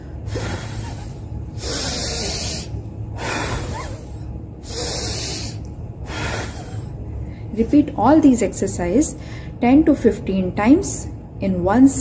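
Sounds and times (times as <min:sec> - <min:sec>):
soft in-breath: 0:00.2 - 0:07.5, 0:09.2 - 0:09.6.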